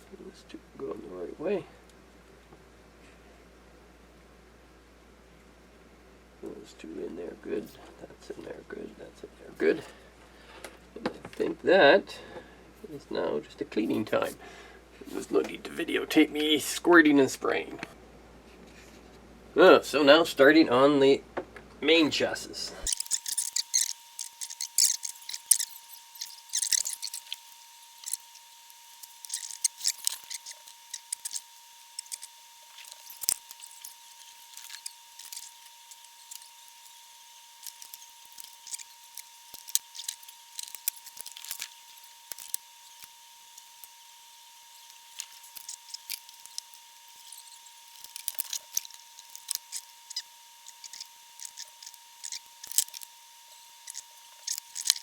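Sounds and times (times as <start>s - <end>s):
steady high-pitched tone: 21.8s - 55.0s.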